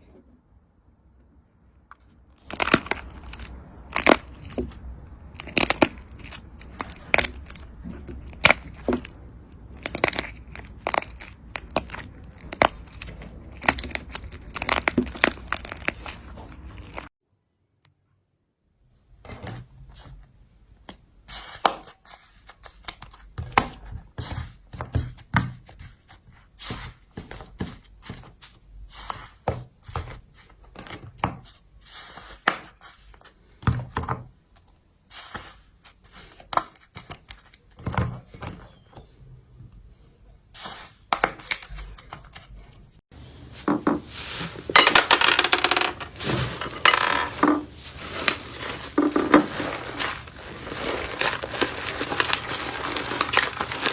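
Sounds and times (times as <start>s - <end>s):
slime clicking and popping: 2.5s - 4.7s, 5.4s - 7.6s, 9.6s - 17.0s.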